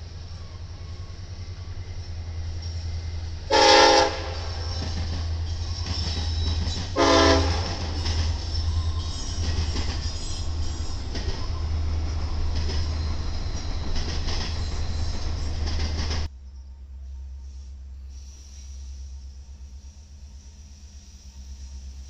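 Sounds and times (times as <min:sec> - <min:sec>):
train rumbling on rails: 0:00.0 - 0:22.0
locomotive horn blast: 0:03.5 - 0:04.7, 0:07.0 - 0:08.0.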